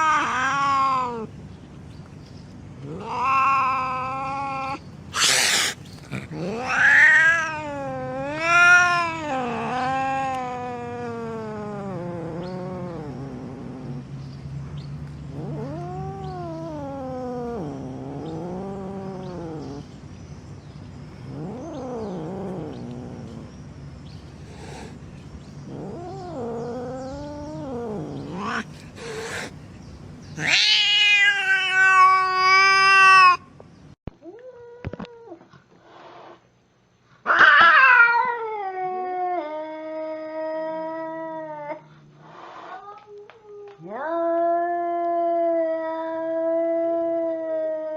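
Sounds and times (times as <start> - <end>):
cat yowling and growling: 0.0 - 1.3, 2.8 - 14.0, 15.3 - 19.9, 21.3 - 23.5, 25.7 - 29.6, 30.4 - 33.5, 37.2 - 41.9, 42.6 - 47.9.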